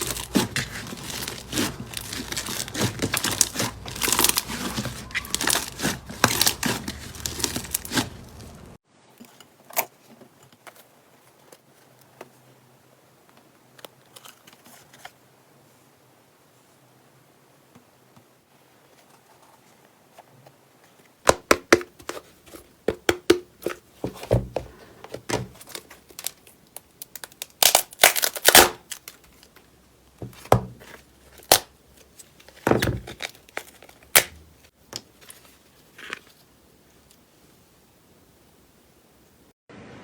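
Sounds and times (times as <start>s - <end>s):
slime popping and crackling: 0.0s - 8.8s, 25.7s - 29.1s.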